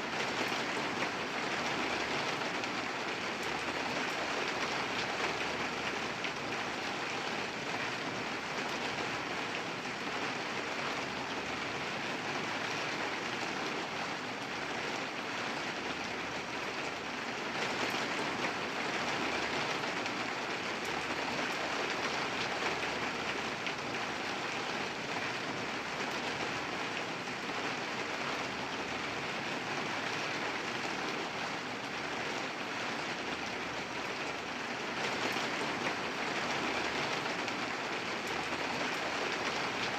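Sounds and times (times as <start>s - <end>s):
moderate rain falling: 0.0s - 39.9s.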